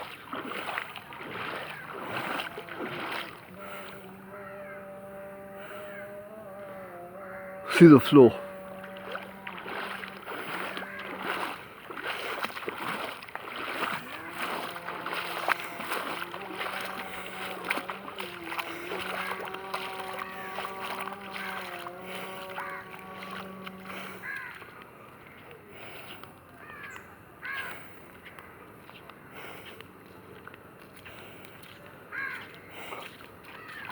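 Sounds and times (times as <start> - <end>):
feet wading through water: 0.0 - 33.9
short calls: 1.5 - 11.6, 13.7 - 24.5.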